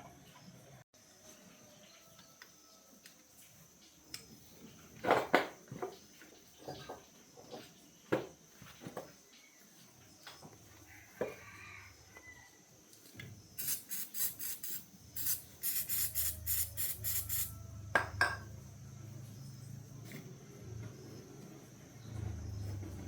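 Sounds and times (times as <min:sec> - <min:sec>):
quick rasping strokes: 0:13.6 - 0:17.5.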